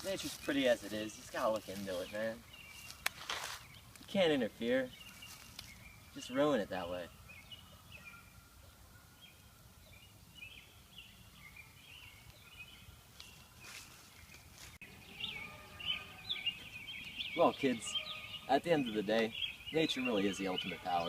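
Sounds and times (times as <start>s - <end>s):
outdoor background hiss: 0.0s - 21.0s
small birds chirping: 0.0s - 21.0s.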